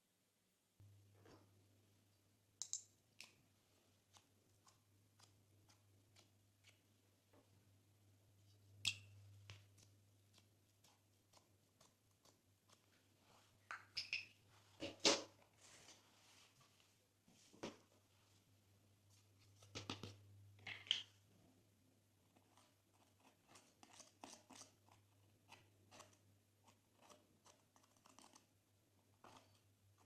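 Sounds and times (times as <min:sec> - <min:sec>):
low steady hum: 0:00.0 - 0:13.6.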